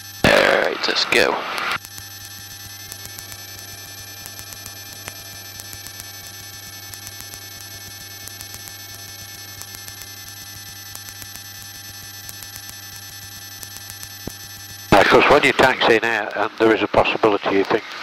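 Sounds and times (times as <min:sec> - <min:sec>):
aircraft engine hum and whine: 0:00.2 - 0:11.3
fast regular ticking: 0:00.2 - 0:18.0.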